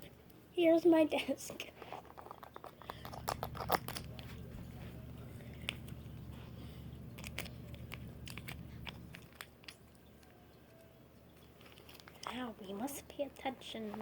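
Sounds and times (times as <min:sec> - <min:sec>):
low steady hum: 0:00.0 - 0:14.0
small objects clicking and tapping: 0:01.8 - 0:04.2, 0:07.1 - 0:12.4.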